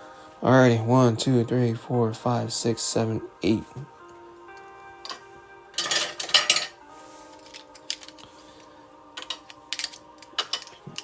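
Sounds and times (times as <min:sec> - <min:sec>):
boxes clattering: 0:05.8 - 0:06.8.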